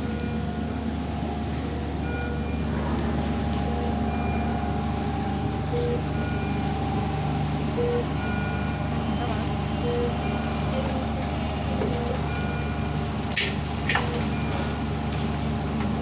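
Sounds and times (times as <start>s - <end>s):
steady machine hum: 0.0s - 16.0s
medical equipment beeps: 3.5s - 13.0s.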